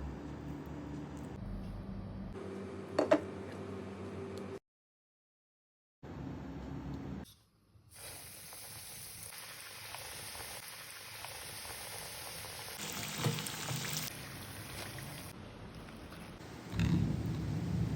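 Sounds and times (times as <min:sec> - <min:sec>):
chicken sizzling in hot oil: 0:07.9 - 0:15.3.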